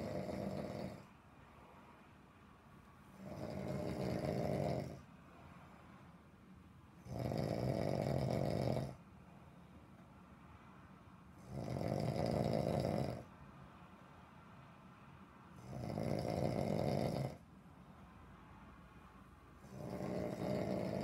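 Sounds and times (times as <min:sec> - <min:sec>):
man snoring deeply: 0:00.0 - 0:01.1, 0:03.2 - 0:05.0, 0:07.0 - 0:09.0, 0:11.4 - 0:13.3, 0:15.6 - 0:17.4, 0:19.6 - 0:21.0.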